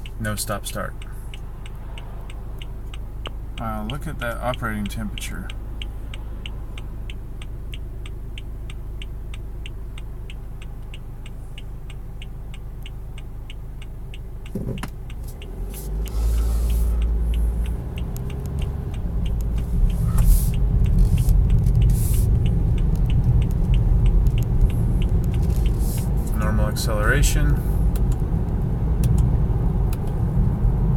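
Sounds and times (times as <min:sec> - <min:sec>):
car engine idling: 0:00.0 - 0:30.9
turn signal relay ticking: 0:00.0 - 0:30.9.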